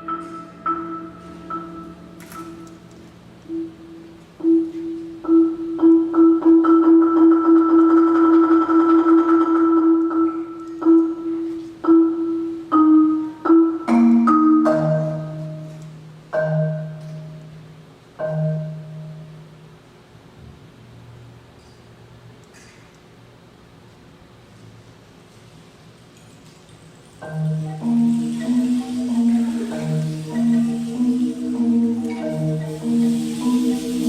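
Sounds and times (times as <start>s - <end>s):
mallet percussion ensemble: 0.0s - 19.5s, 27.1s - 34.0s.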